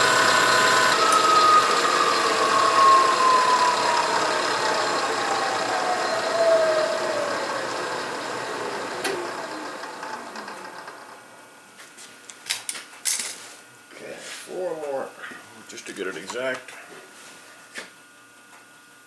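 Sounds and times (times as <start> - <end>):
spindle motor whine spinning down: 0.0 - 11.6.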